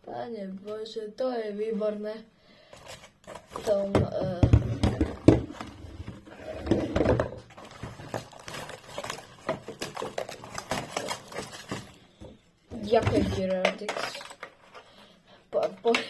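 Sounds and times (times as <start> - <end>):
plastic toy parts clicking: 13.4 - 14.6.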